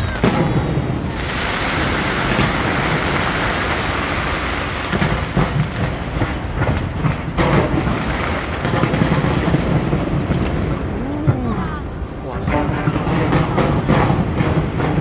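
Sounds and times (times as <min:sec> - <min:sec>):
fireworks crackling and popping: 0:00.0 - 0:11.3
fireworks rumble: 0:00.0 - 0:15.0.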